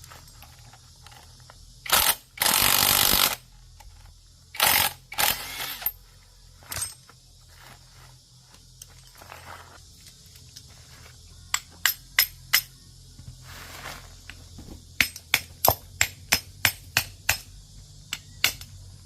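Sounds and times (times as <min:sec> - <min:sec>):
power tool bursts: 0:01.8 - 0:03.4, 0:04.6 - 0:05.9.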